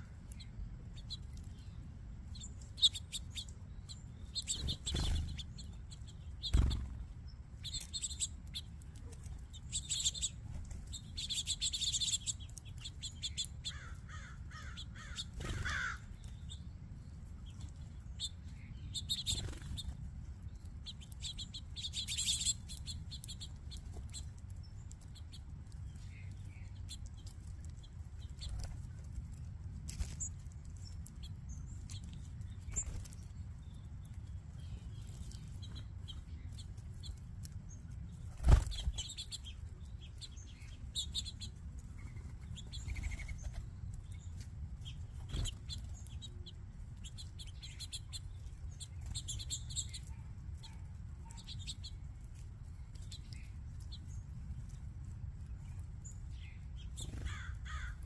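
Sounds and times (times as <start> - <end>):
small birds chirping: 0.0 - 58.0
wings flapping: 6.5 - 7.1, 38.3 - 39.2.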